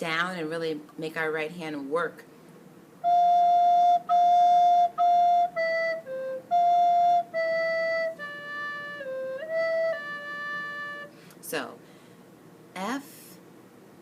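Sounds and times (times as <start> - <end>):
recorder playing held notes: 3.0 - 11.3.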